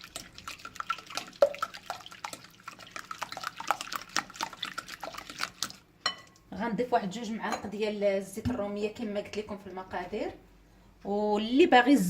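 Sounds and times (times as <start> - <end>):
wet liquid sounds: 0.0 - 5.9.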